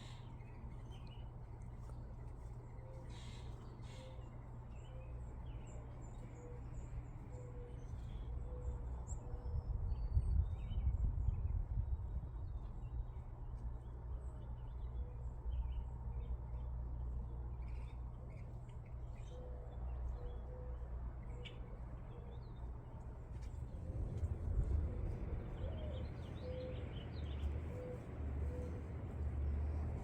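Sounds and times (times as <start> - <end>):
faint bird chirps: 2.8 - 10.2
steady low rumble: 7.9 - 30.0.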